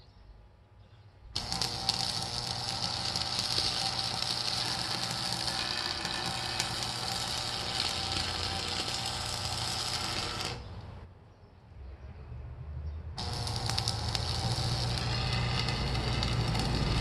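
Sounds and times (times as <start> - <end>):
arc welding crackle: 1.4 - 11.0, 13.2 - 17.0.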